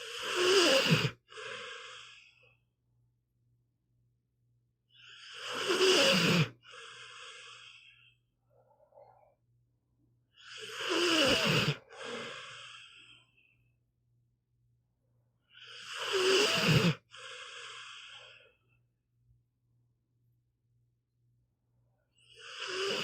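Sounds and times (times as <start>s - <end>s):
dog snoring: 0.0s - 2.2s, 5.0s - 8.0s, 10.4s - 13.2s, 15.5s - 18.5s, 22.3s - 23.0s.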